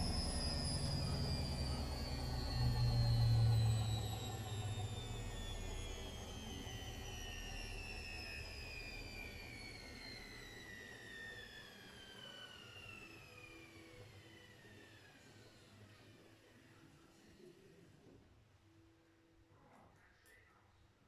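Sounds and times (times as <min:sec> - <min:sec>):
washing machine drum spinning down: 0:00.0 - 0:12.9.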